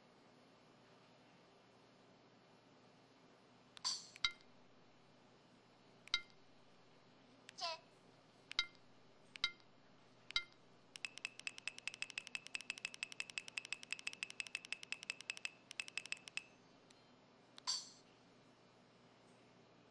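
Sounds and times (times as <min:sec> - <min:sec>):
fast ticking beeps: 0:06.1 - 0:06.4, 0:08.5 - 0:09.7, 0:10.3 - 0:16.5.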